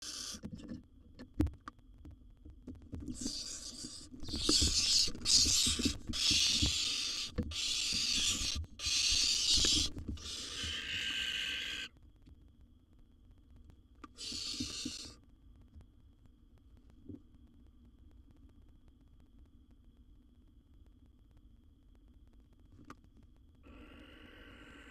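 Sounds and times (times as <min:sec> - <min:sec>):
barn owls hissing: 0:00.0 - 0:00.4, 0:03.1 - 0:11.9, 0:14.2 - 0:15.2, 0:23.7 - 0:24.9.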